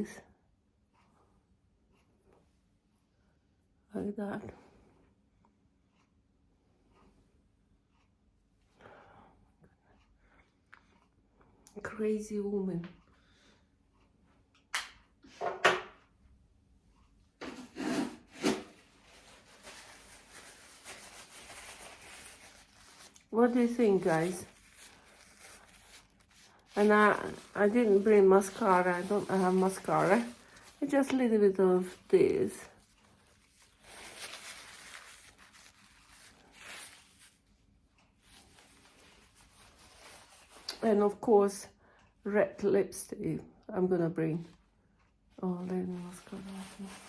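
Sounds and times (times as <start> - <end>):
faint steady rubbing: 17.0 - 41.0, 45.4 - 47.0.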